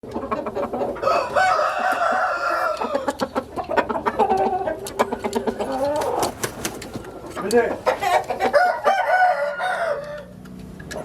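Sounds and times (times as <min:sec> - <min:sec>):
roosters crowing: 0:00.6 - 0:10.5.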